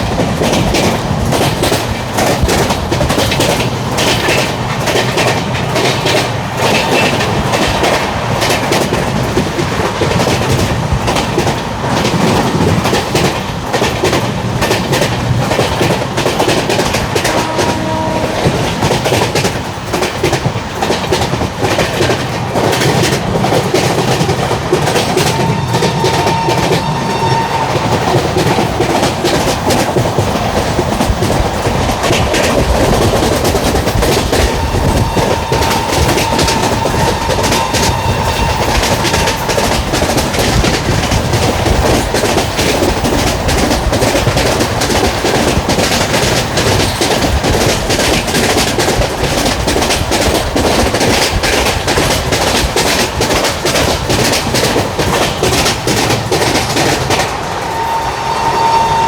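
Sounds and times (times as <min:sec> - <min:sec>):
train wheels clattering over rail joints: 0:00.0 - 0:59.0
faint locomotive horn: 0:17.1 - 0:19.2, 0:24.8 - 0:28.7, 0:33.7 - 0:40.7, 0:57.6 - 0:59.0.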